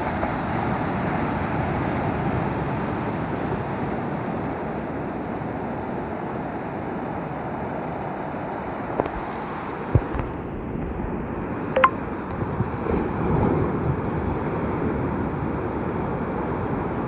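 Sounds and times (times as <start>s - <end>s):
sea surf on shore: 0.0s - 17.0s
wind noise on microphone: 9.0s - 15.5s.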